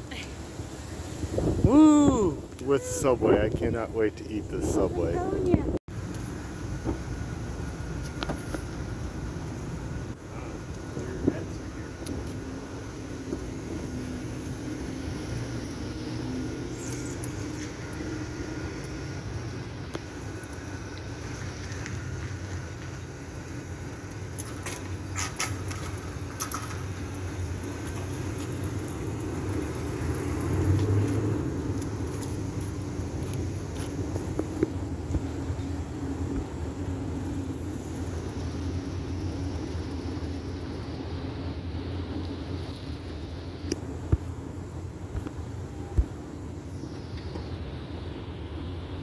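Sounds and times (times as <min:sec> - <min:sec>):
road rumble: 0:00.0 - 0:49.0.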